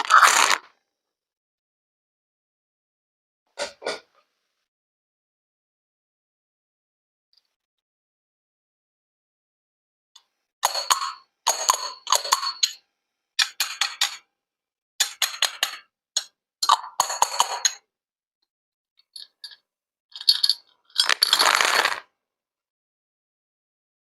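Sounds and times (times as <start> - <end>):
small hard objects clinking: 19.2 - 22.0.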